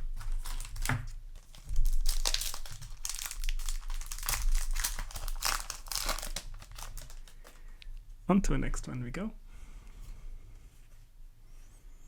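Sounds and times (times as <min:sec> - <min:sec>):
foil wrapper crinkling: 0:00.0 - 0:07.8.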